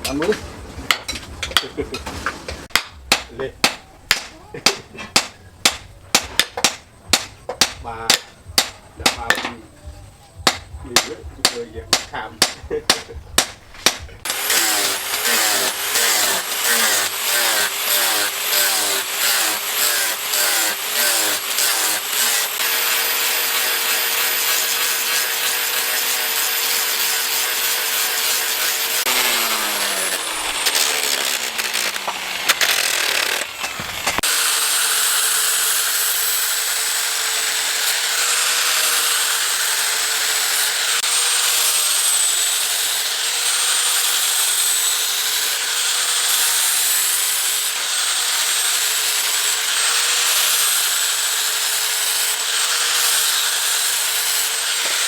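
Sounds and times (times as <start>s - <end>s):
hand tool strokes: 10.4s - 44.4s
electric power tool running: 14.2s - 55.0s.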